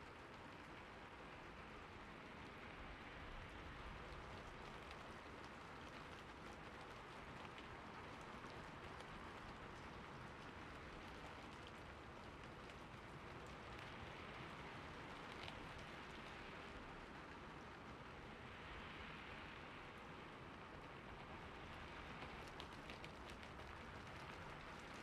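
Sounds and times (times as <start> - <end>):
small drip-like ticks: 0.0 - 25.0.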